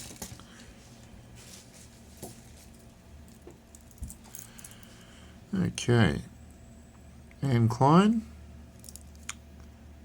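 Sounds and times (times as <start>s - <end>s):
packaging rustling: 0.0s - 0.4s.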